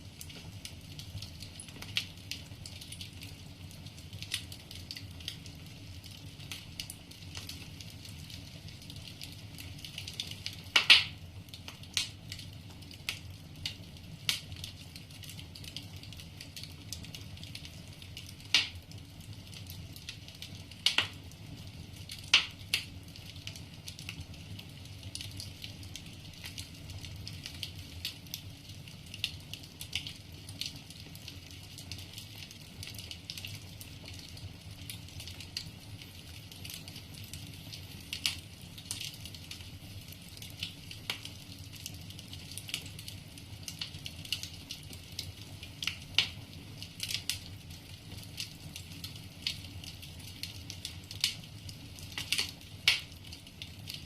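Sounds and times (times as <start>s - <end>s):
logs crackling and popping: 0.0s - 54.0s
low fire rumble: 0.0s - 54.0s
loud wood snaps: 10.7s - 11.2s, 18.6s - 18.8s, 20.8s - 21.2s, 22.3s - 22.9s, 52.2s - 53.1s.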